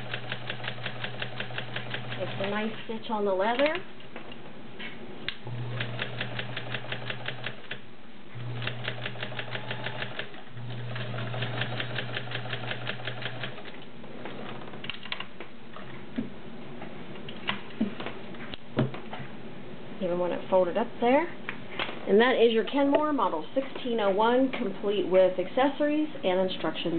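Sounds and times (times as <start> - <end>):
sewing machine motor hum: 5.4 - 7.7, 8.4 - 13.7.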